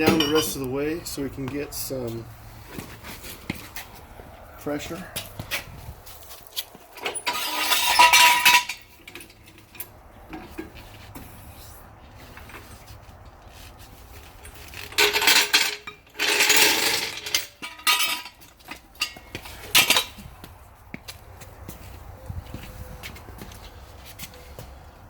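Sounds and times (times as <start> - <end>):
floor jack clanking and scraping: 7.0 - 11.3, 14.1 - 20.3.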